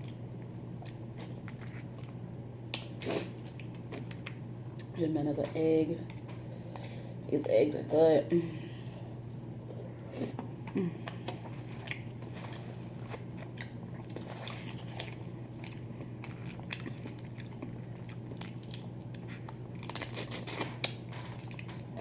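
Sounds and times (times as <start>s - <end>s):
person chewing food: 0.0s - 4.9s, 9.6s - 22.0s.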